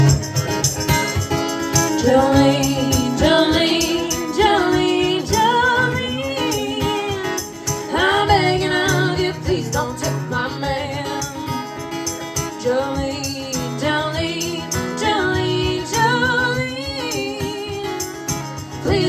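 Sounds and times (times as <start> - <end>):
tambourine jingling: 0.0 - 19.0
voices singing in harmony: 1.9 - 11.5, 12.6 - 18.1.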